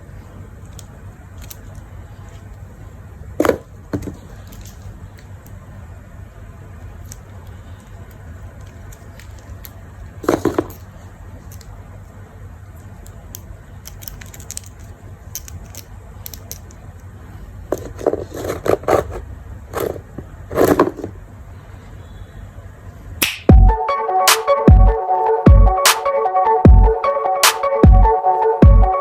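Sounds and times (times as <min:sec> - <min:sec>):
scraping and rustling: 0:08.6 - 0:11.6, 0:17.7 - 0:21.2.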